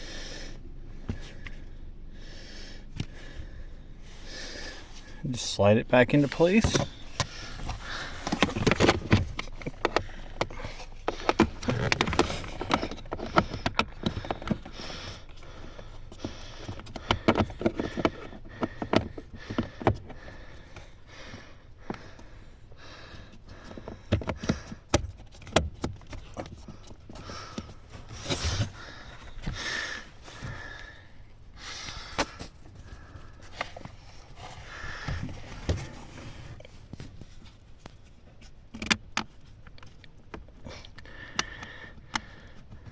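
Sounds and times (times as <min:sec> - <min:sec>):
rustling handling noise: 0:02.8 - 0:42.8
plastic clicks and knocks: 0:06.6 - 0:15.4, 0:16.1 - 0:20.8, 0:38.7 - 0:42.9.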